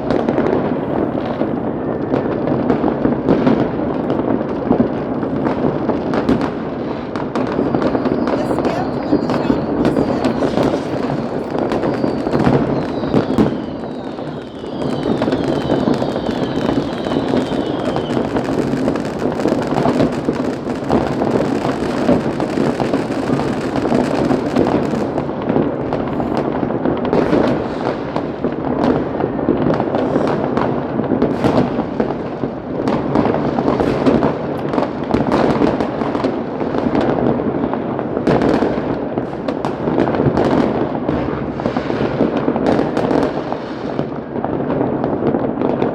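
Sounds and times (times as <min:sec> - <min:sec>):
fireworks bangs and crackles: 0:00.0 - 0:45.9
firework whistles falling in pitch: 0:07.6 - 0:20.2.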